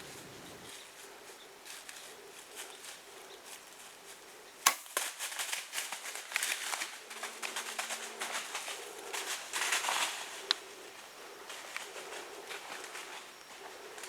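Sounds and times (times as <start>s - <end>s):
crackling and rustling: 0.0s - 14.0s
sharp crack: 4.7s - 5.1s.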